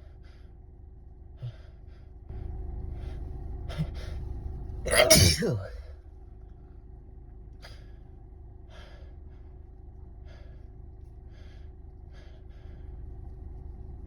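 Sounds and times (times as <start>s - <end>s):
low steady hum: 0.0s - 14.0s
person gasping and sniffing: 4.9s - 5.8s.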